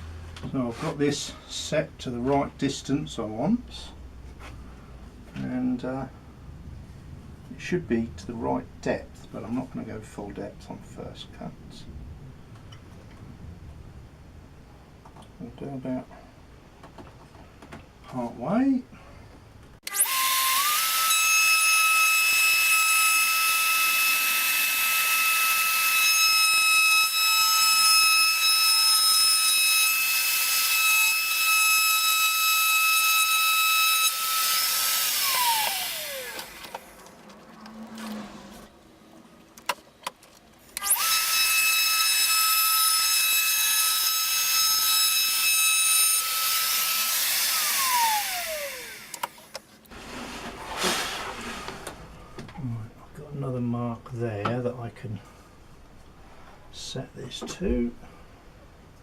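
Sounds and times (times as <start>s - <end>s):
electric router whining: 34.1s - 36.8s, 46.2s - 49.4s.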